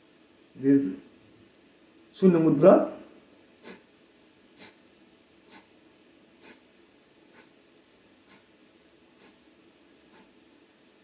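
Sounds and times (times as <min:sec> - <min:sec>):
forceful nasal exhalations: 0:03.6 - 0:03.9, 0:04.6 - 0:04.8, 0:05.5 - 0:05.7, 0:06.4 - 0:06.6, 0:07.3 - 0:07.6, 0:08.3 - 0:08.5, 0:09.2 - 0:09.4, 0:10.1 - 0:10.3.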